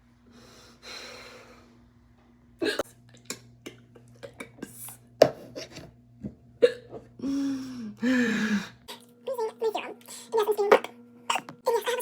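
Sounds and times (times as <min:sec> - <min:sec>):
woman hiccuping: 0:02.6 - 0:03.0, 0:06.6 - 0:07.0.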